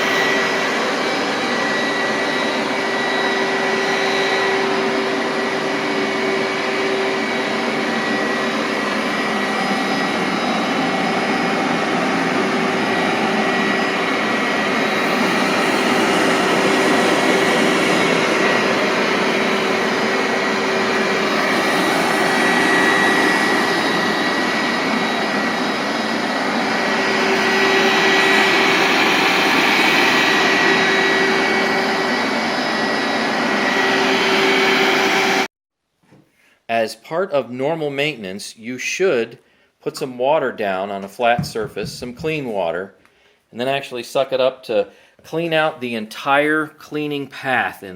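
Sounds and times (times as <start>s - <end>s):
carpet extractor suction motor drone: 0.0s - 35.5s.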